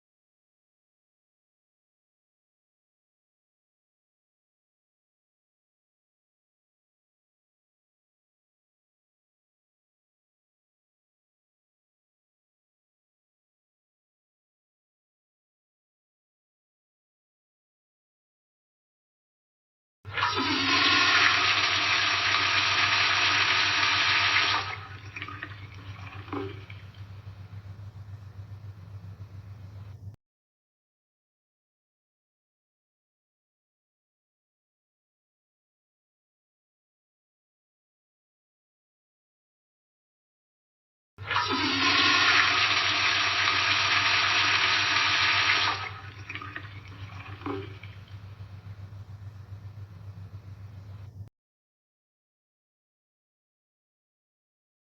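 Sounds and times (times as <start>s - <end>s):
toilet flushing: 20.1s - 27.5s, 41.2s - 48.9s
low steady hum: 20.1s - 30.2s, 41.2s - 51.3s
water trickling and gurgling: 24.6s - 27.2s, 45.4s - 48.6s.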